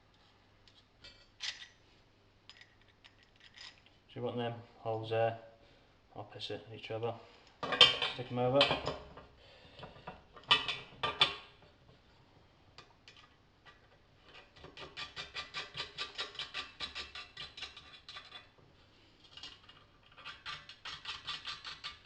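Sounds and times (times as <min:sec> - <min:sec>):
small metal parts clinking: 0:01.0 - 0:01.8, 0:02.5 - 0:03.9.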